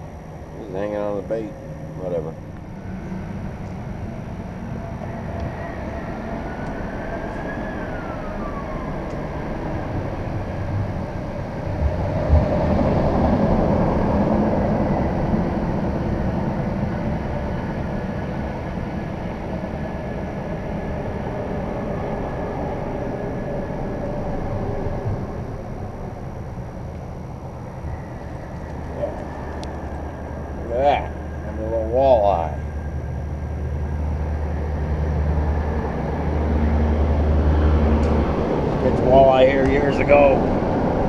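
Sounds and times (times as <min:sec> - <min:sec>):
highway traffic hum: 0:00.0 - 0:41.0
vehicle passing: 0:27.8 - 0:41.0.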